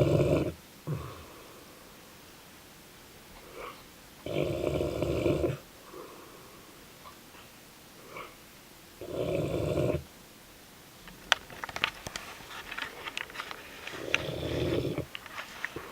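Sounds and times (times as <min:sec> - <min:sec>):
dog snoring: 0:00.0 - 0:01.4, 0:03.4 - 0:06.1, 0:09.0 - 0:10.1, 0:14.0 - 0:15.1.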